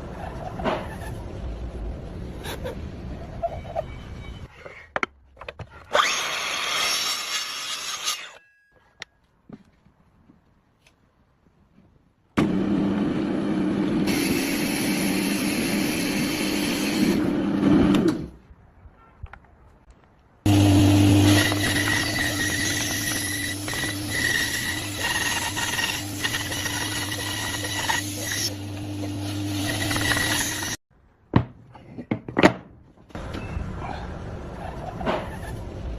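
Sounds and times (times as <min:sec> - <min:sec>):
woodworking power tool cutting: 0:05.9 - 0:08.3, 0:14.0 - 0:18.1, 0:20.5 - 0:30.8.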